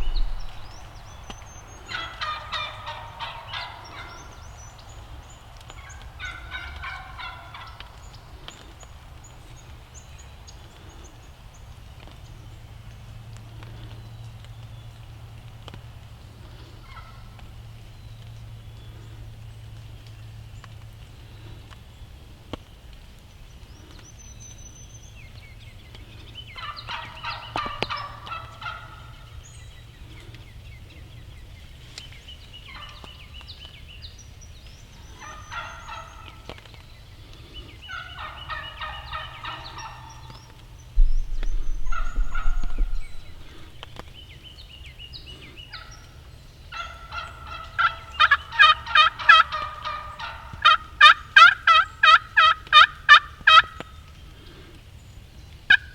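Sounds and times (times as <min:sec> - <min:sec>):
brief low rumble: 0:00.0 - 0:01.7, 0:40.9 - 0:44.2
turkey gobbling: 0:00.0 - 0:04.8, 0:05.8 - 0:08.2, 0:16.8 - 0:17.4, 0:26.5 - 0:29.4, 0:32.7 - 0:33.2, 0:35.0 - 0:36.6, 0:37.8 - 0:44.2, 0:45.6 - 0:54.6, 0:55.7 - 0:55.9.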